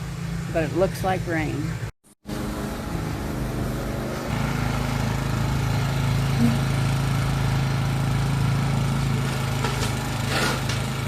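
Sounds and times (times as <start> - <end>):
lawn mower engine running: 2.2 - 11.0.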